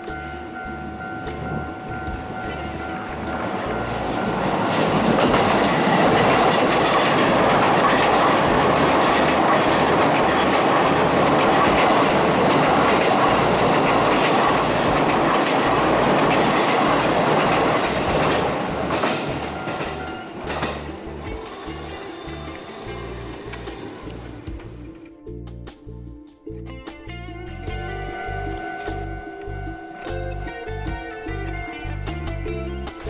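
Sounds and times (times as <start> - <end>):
electric train passing: 0.0 - 25.4, 27.5 - 33.0
wheels clattering over rail joints: 3.1 - 25.1.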